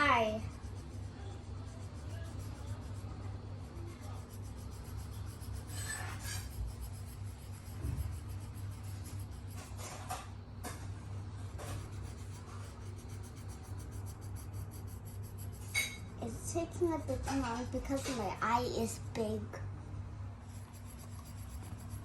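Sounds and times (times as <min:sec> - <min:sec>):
drawing tool scratching paper: 0:00.0 - 0:10.0, 0:11.5 - 0:16.1, 0:20.4 - 0:22.0
steady low hum: 0:00.0 - 0:22.0.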